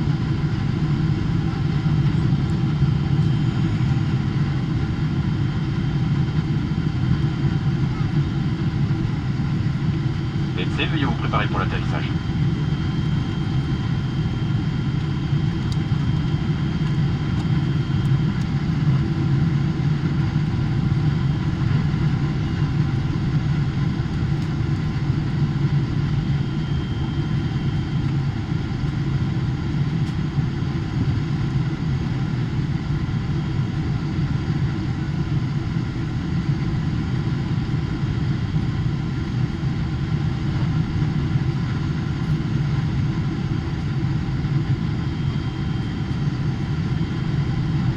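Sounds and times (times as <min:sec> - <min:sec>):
airliner cabin drone: 0:00.0 - 0:47.9
faint steady whining tones: 0:00.4 - 0:31.4.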